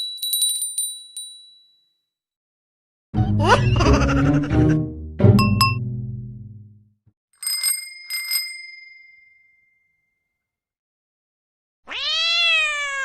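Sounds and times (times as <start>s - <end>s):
bicycle bell ringing: 0.0s - 1.9s, 7.4s - 10.1s
cat meowing: 11.9s - 13.0s.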